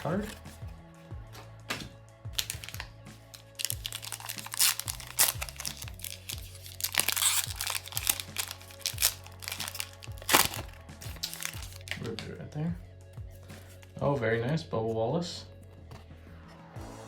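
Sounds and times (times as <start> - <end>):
background music with bass line: 0.0 - 17.0
foil wrapper crinkling and tearing: 2.4 - 12.1.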